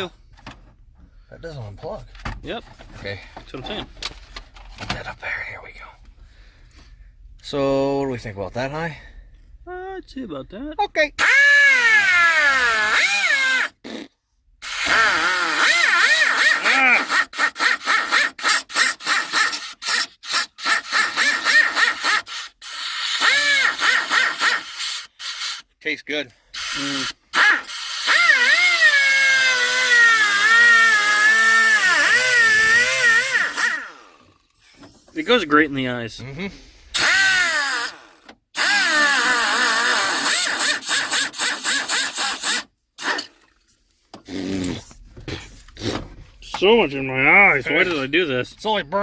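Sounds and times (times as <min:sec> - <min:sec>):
power grinder cutting plastic: 0:11.2 - 0:14.0, 0:14.6 - 0:25.7, 0:26.6 - 0:34.4, 0:37.0 - 0:43.4.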